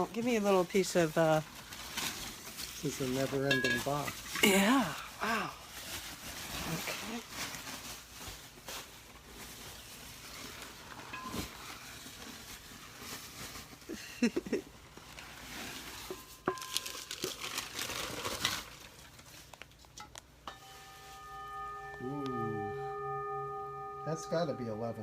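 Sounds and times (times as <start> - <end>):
packing wrap crinkling and tearing: 0.6 - 20.3
singing bowl ringing: 20.4 - 25.0.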